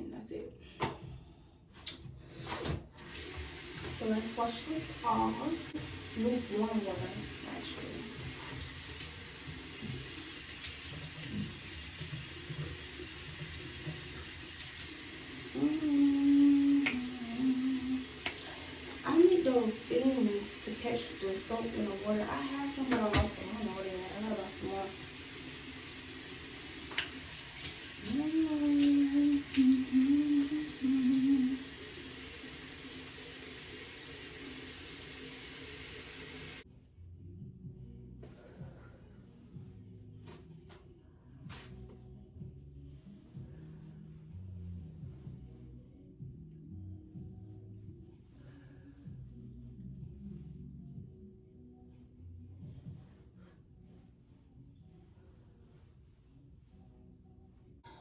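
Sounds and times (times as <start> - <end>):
tap water running into sink: 3.0 - 36.6
person humming a tune: 15.5 - 18.3, 28.1 - 31.7.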